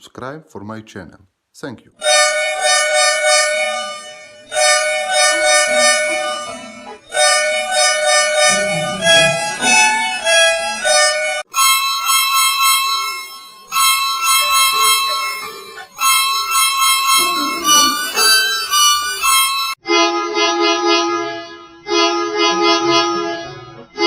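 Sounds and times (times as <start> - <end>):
musical bus horn blasts: 2.0 - 11.4.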